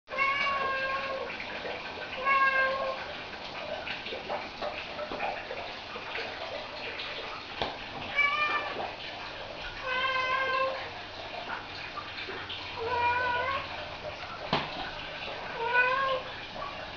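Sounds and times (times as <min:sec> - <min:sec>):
cat meowing: 0:08.1 - 0:08.8, 0:12.8 - 0:13.8, 0:15.6 - 0:16.3.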